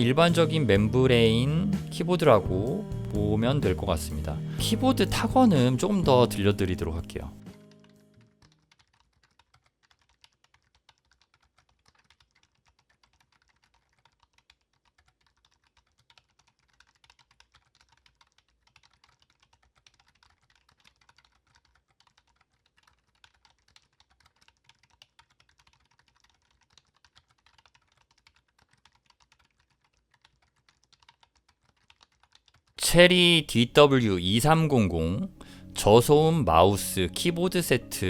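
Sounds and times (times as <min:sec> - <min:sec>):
typing on keyboard: 0:07.6 - 0:32.8.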